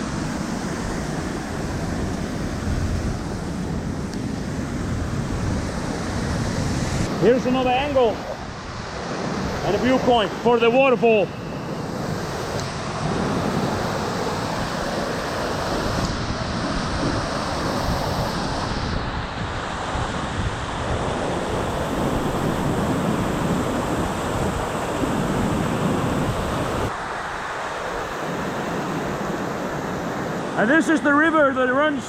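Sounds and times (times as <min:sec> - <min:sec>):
wind buffeting microphone: 0:00.0 - 0:10.5, 0:11.4 - 0:30.5
waterfall rushing: 0:06.9 - 0:11.9.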